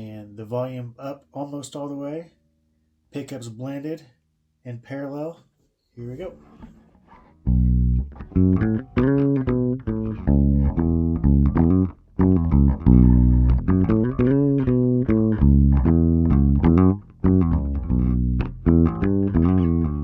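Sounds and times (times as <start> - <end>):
electric bass plucked notes: 6.2 - 20.0.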